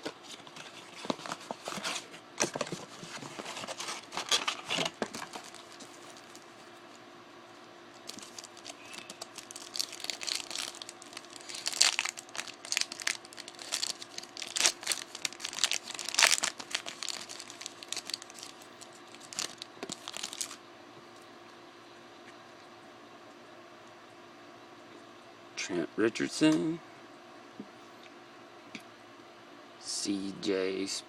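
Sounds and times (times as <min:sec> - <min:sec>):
wrapper crinkling and tearing: 0:03.0 - 0:07.0, 0:08.0 - 0:20.6.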